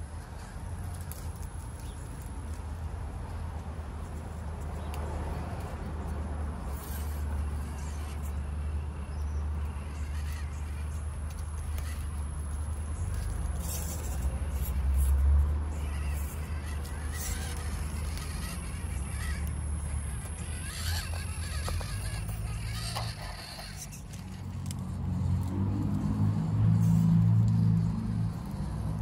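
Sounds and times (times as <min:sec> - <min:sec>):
rc car wheels crunching: 0:00.0 - 0:08.5, 0:09.1 - 0:29.0.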